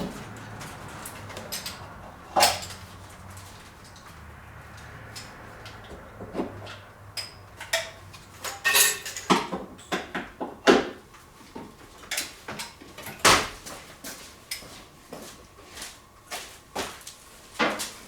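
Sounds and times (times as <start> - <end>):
metal tools clinking and clanking: 0.7 - 4.0, 6.4 - 9.6.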